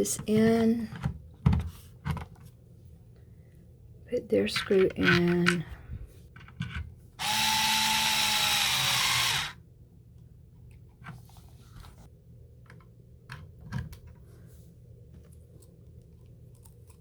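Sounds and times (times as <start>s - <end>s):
electric drill driving screw: 7.2s - 9.6s.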